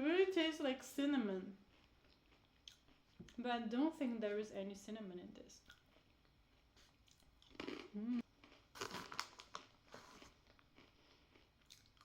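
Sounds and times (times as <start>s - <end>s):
plastic snack bag crinkling: 8.4s - 10.9s.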